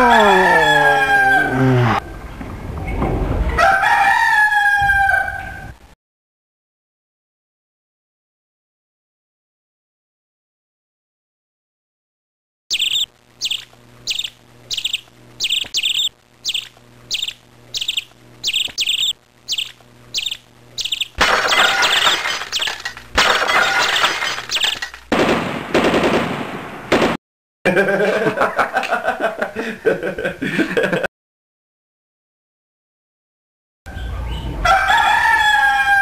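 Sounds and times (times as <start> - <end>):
high bird-like chirps: 12.7 - 23.0, 23.8 - 25.0.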